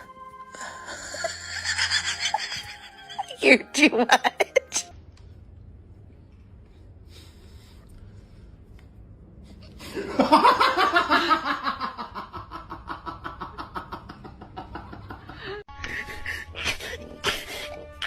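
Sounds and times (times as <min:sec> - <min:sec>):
peal of laughter: 0:01.0 - 0:03.4, 0:09.9 - 0:18.0.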